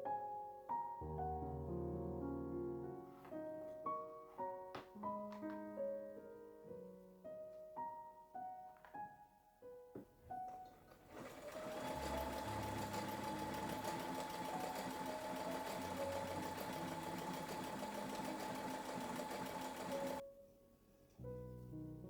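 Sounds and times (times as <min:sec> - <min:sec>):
soft piano music: 0:00.0 - 0:22.0
small electric motor clattering: 0:11.0 - 0:20.2.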